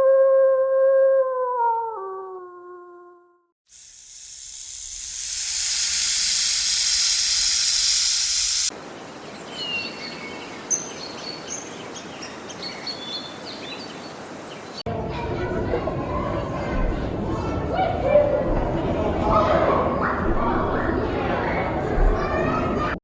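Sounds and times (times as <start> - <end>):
snake hissing: 3.7 - 8.7.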